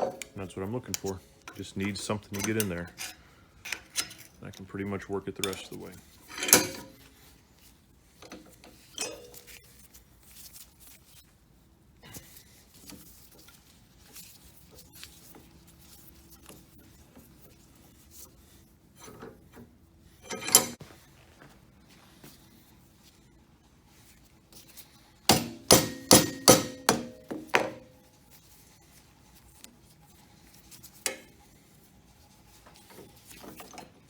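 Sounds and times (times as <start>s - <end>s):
small metal clicks and scraping: 0.0s - 11.3s, 12.1s - 21.0s, 27.9s - 34.0s
sharp metallic knock: 25.3s - 27.8s.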